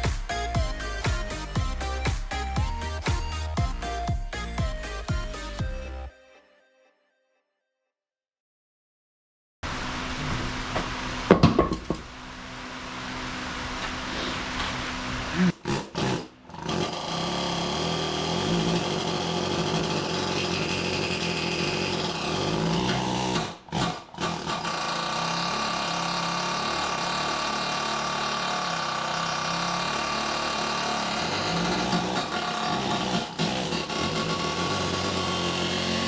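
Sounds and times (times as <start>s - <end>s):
power tool running: 14.2s - 36.0s.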